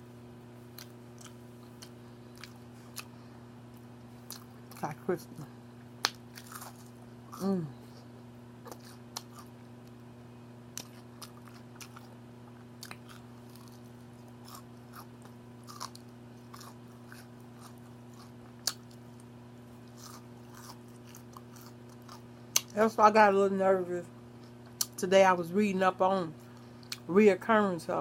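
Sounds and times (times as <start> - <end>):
low steady hum: 0.0 - 28.0
chewing crispy food: 0.7 - 5.0, 6.0 - 7.7, 8.6 - 10.0, 10.7 - 22.8.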